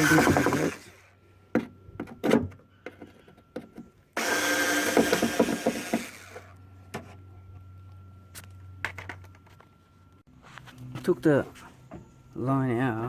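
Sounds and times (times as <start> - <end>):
loud rasping rattling noise: 0.0 - 1.0.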